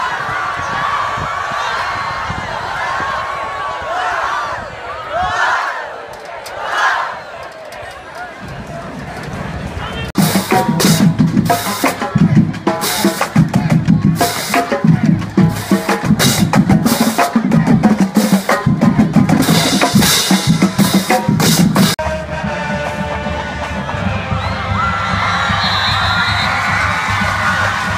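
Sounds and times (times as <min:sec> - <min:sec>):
snare drums: 0:10.1 - 0:27.9
bass drums: 0:10.2 - 0:27.9.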